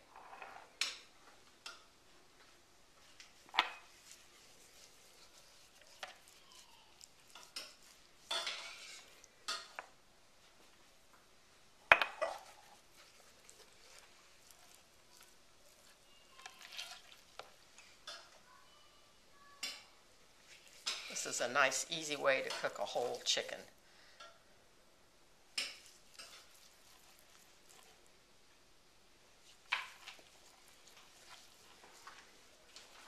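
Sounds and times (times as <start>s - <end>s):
dishes and utensils clinking: 5.8s - 9.9s, 11.9s - 12.8s, 20.6s - 23.4s.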